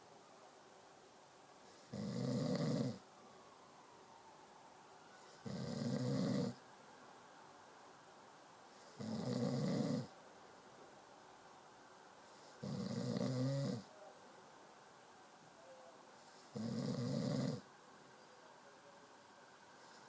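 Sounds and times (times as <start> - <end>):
quiet breathing: 1.5 - 3.6, 11.4 - 14.1, 15.5 - 20.0
person snoring: 16.5 - 17.6.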